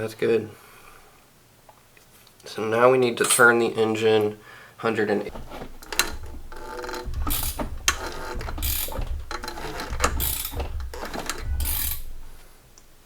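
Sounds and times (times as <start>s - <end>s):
socket ratchet clicking: 5.4s - 12.3s.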